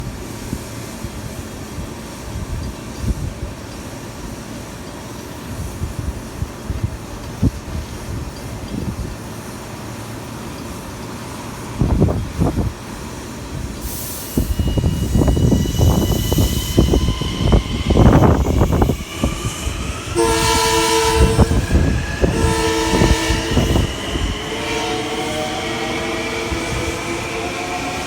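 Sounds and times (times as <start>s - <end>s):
train horn blasts: 20.1s - 27.6s.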